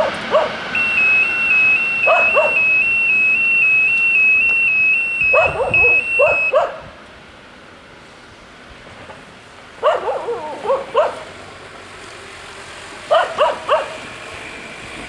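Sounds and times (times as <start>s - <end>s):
dog barking: 0.0s - 0.6s, 2.0s - 2.8s, 5.3s - 7.0s, 9.8s - 11.4s, 13.1s - 14.1s
two-tone electronic warning bell: 0.0s - 6.7s.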